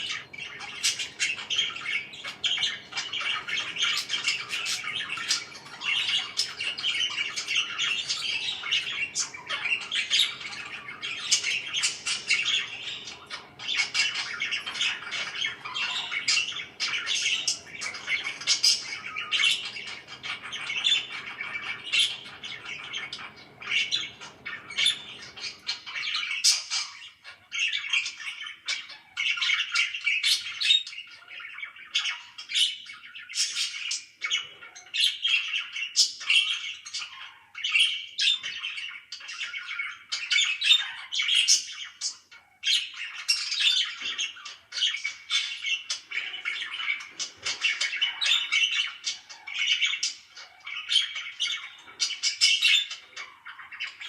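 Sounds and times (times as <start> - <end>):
parakeets chattering: 0.0 - 54.0.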